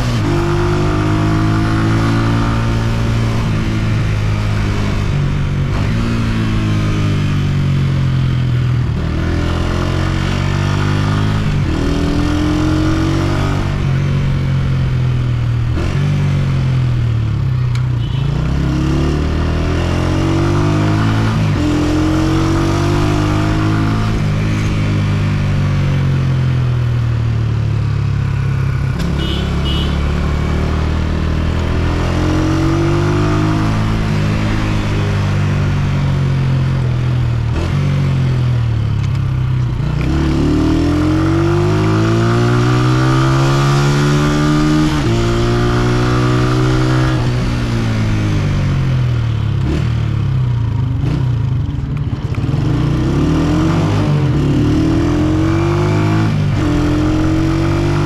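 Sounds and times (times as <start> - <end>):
motorcycle engine accelerating: 0.0 - 17.8, 18.4 - 58.0.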